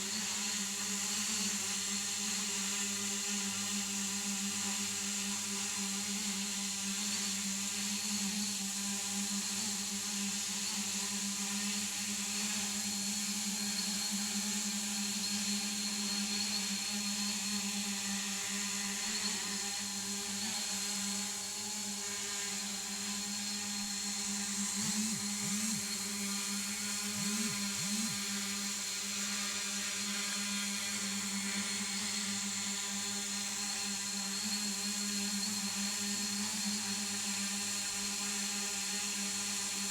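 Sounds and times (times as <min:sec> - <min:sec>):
drone propellers whirring: 0:21.6 - 0:29.3.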